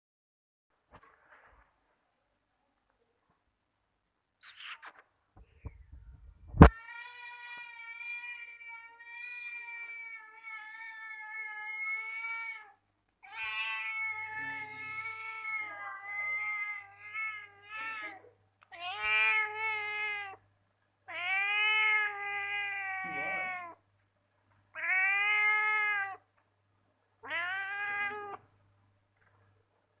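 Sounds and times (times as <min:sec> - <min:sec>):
cat meowing: 0:06.6 - 0:20.4, 0:21.1 - 0:23.8, 0:24.7 - 0:26.2, 0:27.2 - 0:28.4.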